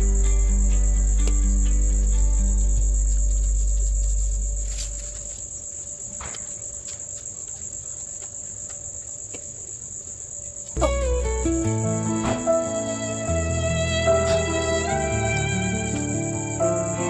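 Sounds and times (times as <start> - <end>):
low music notes: 0.0 - 5.2, 10.8 - 17.0
insect chirring: 0.0 - 17.0.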